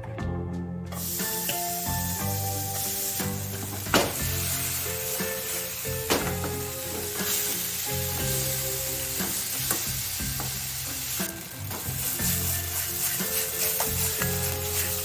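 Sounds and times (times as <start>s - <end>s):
food sizzling in a frying pan: 1.0s - 15.0s
utensil clicking against pan: 9.2s - 15.0s.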